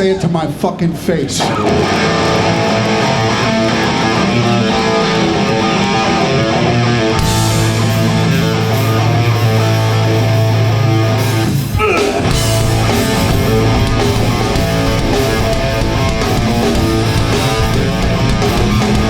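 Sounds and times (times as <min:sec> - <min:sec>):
punk band playing live: 0:01.4 - 0:19.0
held low bass note: 0:12.3 - 0:18.4.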